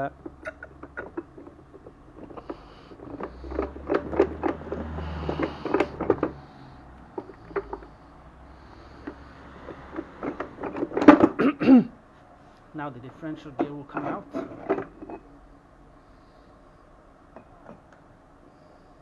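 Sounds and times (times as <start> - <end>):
steel gears knocking and clinking: 0.0 - 11.6, 13.1 - 15.3.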